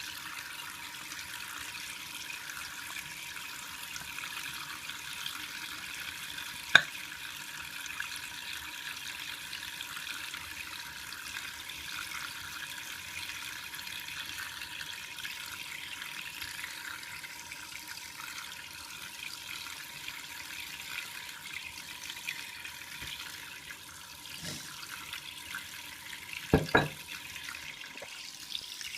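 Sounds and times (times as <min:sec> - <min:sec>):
shaving brush swishing lather: 0:24.4 - 0:24.8.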